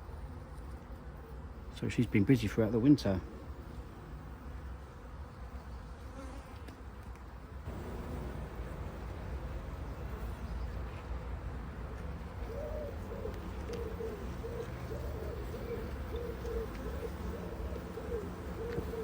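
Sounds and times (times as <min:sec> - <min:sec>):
honeybees humming: 0:00.0 - 0:19.0
bird low hooting calls: 0:12.0 - 0:19.0.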